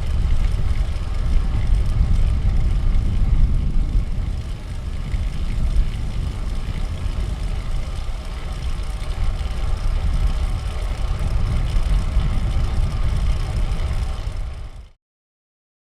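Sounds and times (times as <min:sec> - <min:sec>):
road noise: 0:00.0 - 0:14.9
wind buffeting microphone: 0:00.0 - 0:14.9.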